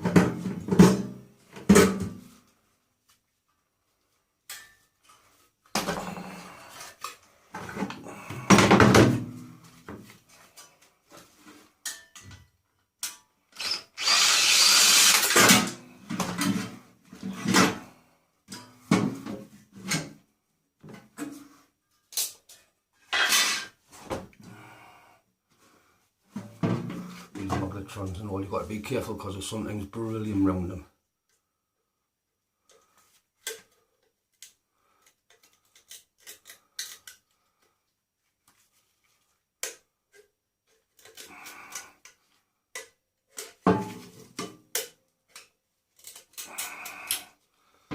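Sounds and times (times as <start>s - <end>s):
power drill bursts: 13.6s - 15.8s.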